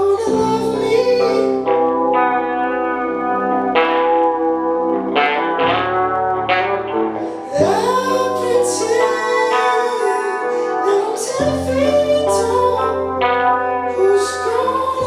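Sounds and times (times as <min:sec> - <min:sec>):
plucked guitar notes: 0:00.0 - 0:15.0
wavering melody line: 0:00.0 - 0:15.0.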